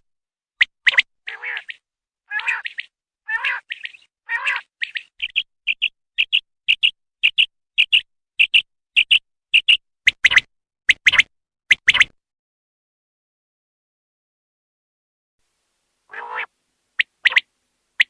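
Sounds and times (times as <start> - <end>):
quail calling: 0.9 - 9.8, 16.1 - 17.5.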